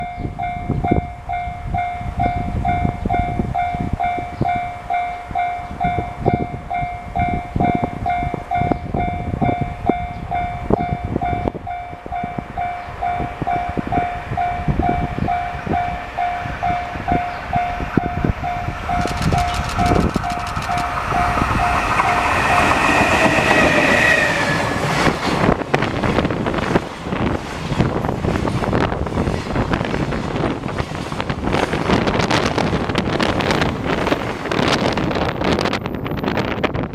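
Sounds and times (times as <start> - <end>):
level crossing alarm dinging: 0.1 - 24.1
train wheels clattering over rail joints: 18.0 - 24.1.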